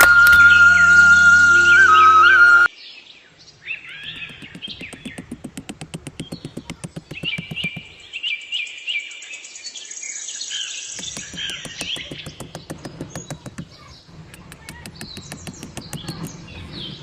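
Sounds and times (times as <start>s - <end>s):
small birds chirping: 2.9s - 17.0s
rapid even clicking: 3.8s - 8.1s, 11.0s - 17.0s.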